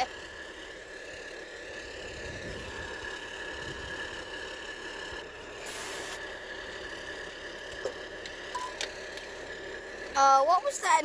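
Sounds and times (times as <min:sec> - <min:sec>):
compressed air hissing: 0:05.6 - 0:06.2.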